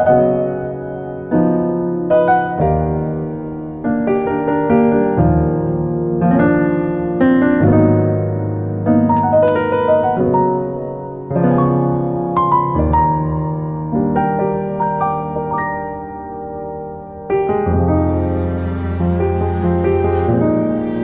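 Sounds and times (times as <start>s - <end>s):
piano chords: 0.0s - 21.0s.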